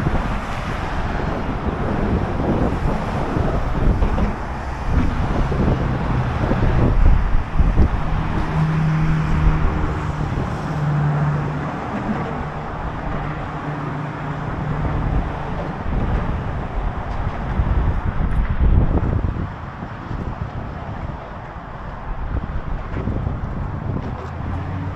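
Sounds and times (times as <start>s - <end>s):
road traffic noise: 0.0s - 24.9s
wind buffeting microphone: 0.0s - 24.9s.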